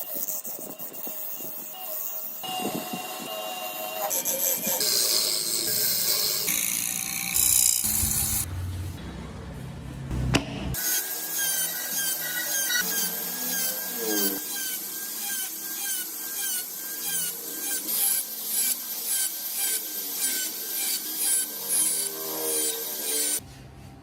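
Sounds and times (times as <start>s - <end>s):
wood being sanded by hand: 7.8s - 8.5s, 10.8s - 23.4s.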